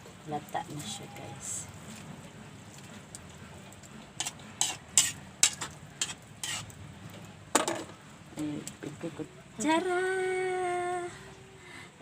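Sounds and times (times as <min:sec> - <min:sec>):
utensil scraping against pot: 0:00.8 - 0:07.2.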